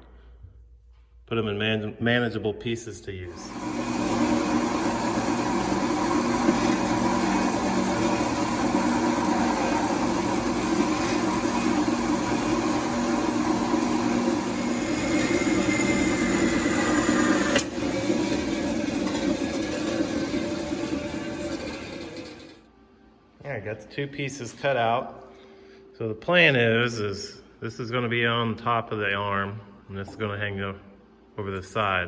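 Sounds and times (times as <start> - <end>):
power saw cutting metal: 3.3 - 22.6.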